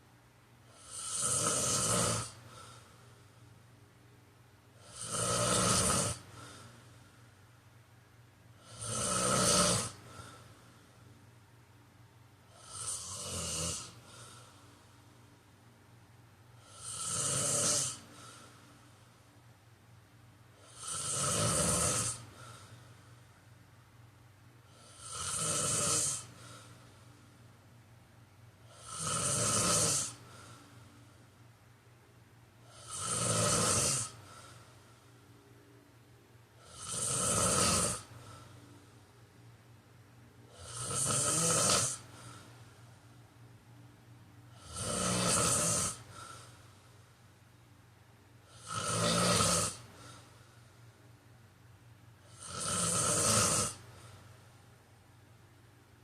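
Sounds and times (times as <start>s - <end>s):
person snoring: 0.7s - 3.0s, 4.8s - 7.0s, 8.6s - 10.7s, 12.5s - 14.9s, 16.6s - 18.6s, 20.6s - 22.9s, 24.7s - 27.0s, 28.6s - 30.8s, 32.6s - 34.8s, 36.6s - 38.5s, 40.5s - 42.6s, 44.5s - 46.8s, 48.5s - 50.2s, 52.2s - 54.1s.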